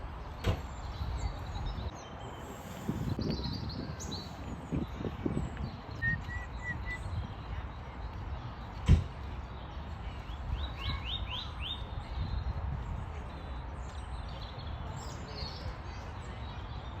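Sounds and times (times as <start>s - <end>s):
bird whistled notes: 5.9s - 7.2s.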